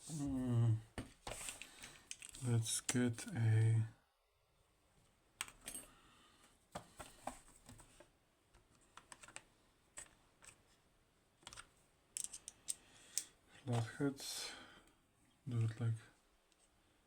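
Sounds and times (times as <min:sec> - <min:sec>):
small tools clicking and tapping: 0:12.2 - 0:13.3.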